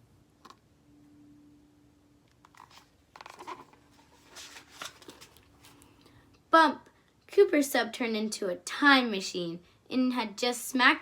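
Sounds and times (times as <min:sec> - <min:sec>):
faint steady hum: 0:00.0 - 0:11.0
book pages rustling: 0:02.4 - 0:06.0.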